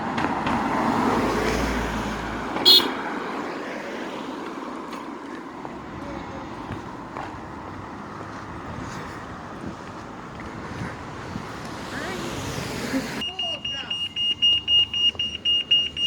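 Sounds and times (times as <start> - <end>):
road traffic: 0.0 - 16.0
vehicle passing: 0.0 - 16.0
high-pitched horn toot: 2.7 - 3.0.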